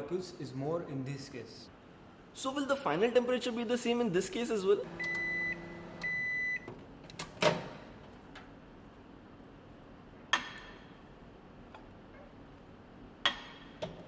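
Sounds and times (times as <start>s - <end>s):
microwave oven hum: 4.8s - 10.2s
microwave long high beep: 5.0s - 6.7s.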